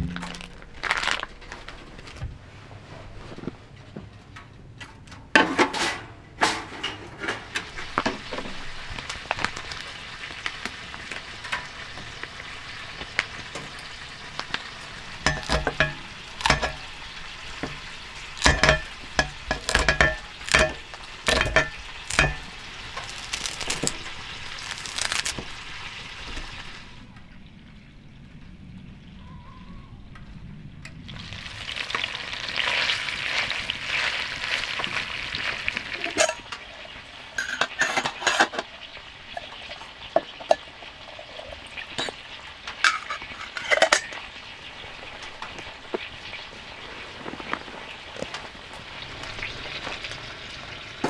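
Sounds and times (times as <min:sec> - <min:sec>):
utensil knocking against pan: 0:15.2 - 0:23.9
food sizzling in a frying pan: 0:31.2 - 0:36.7.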